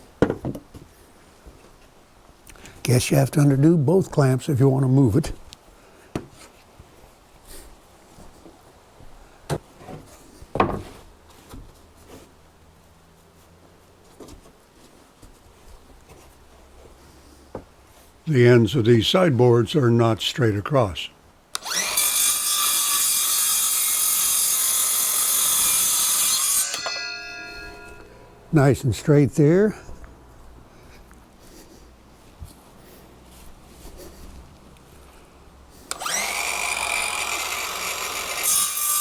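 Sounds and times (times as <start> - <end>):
electric saw cutting wood: 21.6 - 28.1, 35.9 - 39.0.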